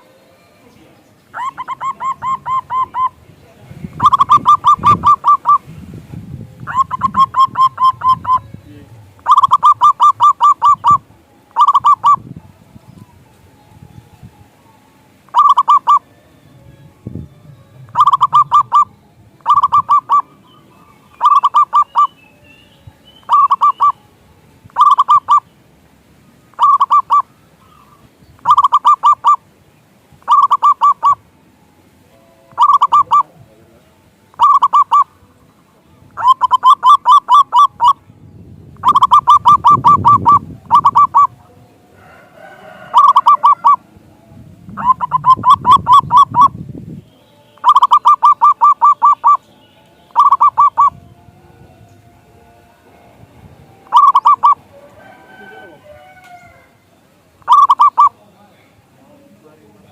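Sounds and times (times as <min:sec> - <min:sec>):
doves cooing: 0:00.0 - 0:05.7, 0:06.6 - 0:13.4, 0:15.3 - 0:16.1, 0:17.4 - 0:22.2, 0:23.2 - 0:24.0, 0:24.7 - 0:25.5, 0:26.5 - 0:29.5, 0:30.2 - 0:31.3, 0:32.2 - 0:38.0, 0:38.8 - 0:46.6, 0:47.6 - 0:49.5, 0:50.1 - 0:51.0, 0:53.8 - 0:58.2
low rumbling noise: 0:00.0 - 0:15.4, 0:16.0 - 0:21.3, 0:37.7 - 0:42.0, 0:43.8 - 0:47.2, 0:50.0 - 0:55.0.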